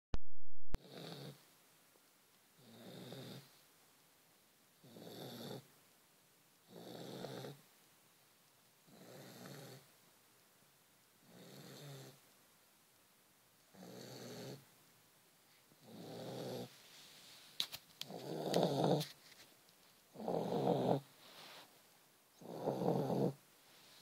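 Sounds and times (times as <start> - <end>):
dog snoring: 0.8 - 1.4, 2.6 - 3.5, 4.8 - 5.7, 6.6 - 7.6, 8.8 - 9.9, 11.2 - 12.2, 13.7 - 14.6, 15.8 - 16.7, 18.0 - 19.1, 20.1 - 21.1, 22.4 - 23.4.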